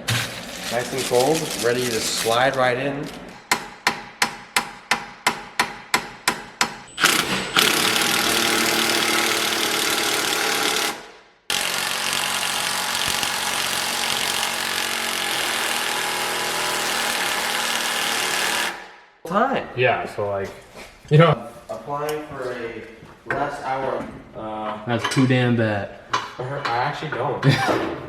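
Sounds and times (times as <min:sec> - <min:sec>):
hammer striking metal: 0:03.4 - 0:08.2.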